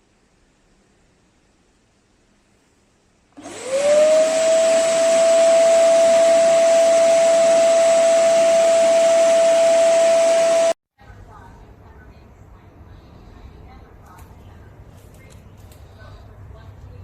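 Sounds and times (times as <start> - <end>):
vacuum cleaner motor whine: 3.4 - 10.8.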